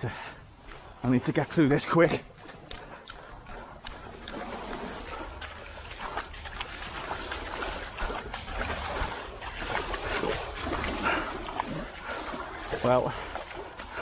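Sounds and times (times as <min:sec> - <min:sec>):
boots wading through water: 0:00.0 - 0:14.0.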